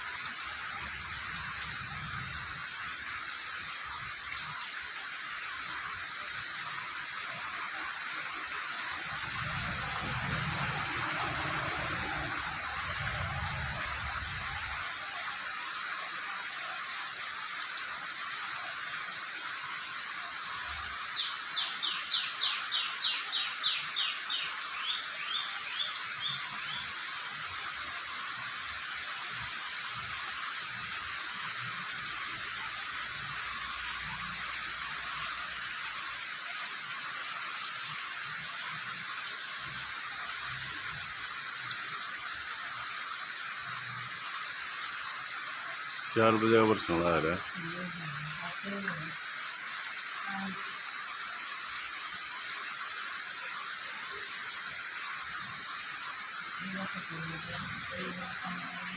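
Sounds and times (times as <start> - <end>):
rain hissing: 0.0 - 58.9
bird chirping: 21.1 - 26.9.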